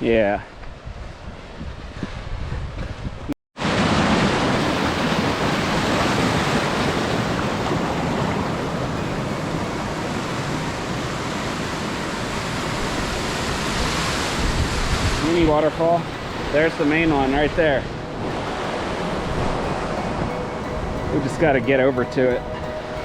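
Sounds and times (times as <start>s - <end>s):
waterfall rushing over rock: 3.6s - 20.3s.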